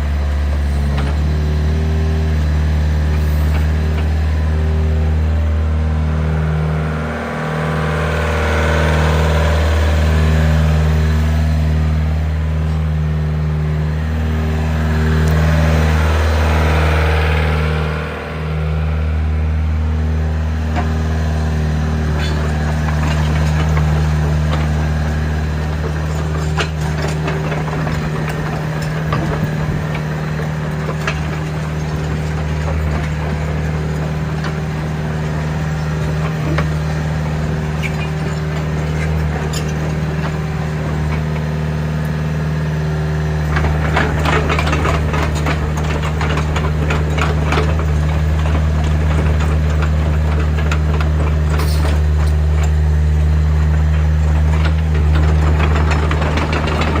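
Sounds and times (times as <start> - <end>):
diesel engine running: 0.0 - 57.0
rattling and clicking: 53.6 - 57.0.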